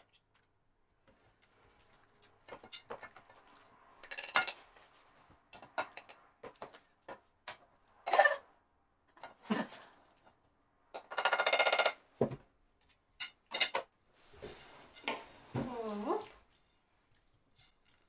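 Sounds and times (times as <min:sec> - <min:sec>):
cutlery and crockery clinking: 0:02.4 - 0:04.8, 0:05.6 - 0:06.9, 0:12.8 - 0:15.4.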